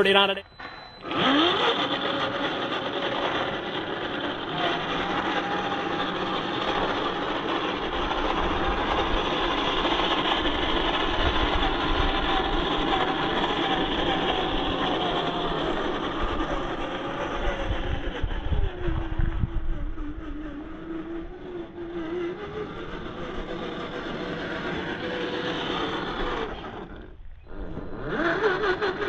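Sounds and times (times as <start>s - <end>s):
electric motor and gearbox whine: 0.0s - 29.0s
rattling and grinding: 0.6s - 29.0s
deep rumble: 4.3s - 25.4s.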